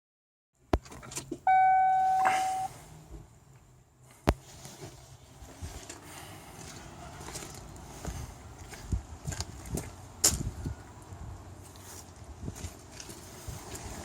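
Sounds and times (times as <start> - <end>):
electronic warning chime: 1.5 - 2.7.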